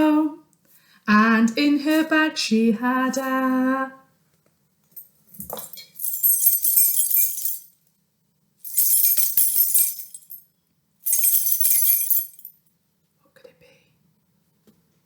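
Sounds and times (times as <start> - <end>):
metal keys jingling: 4.9 - 7.8, 8.7 - 12.6.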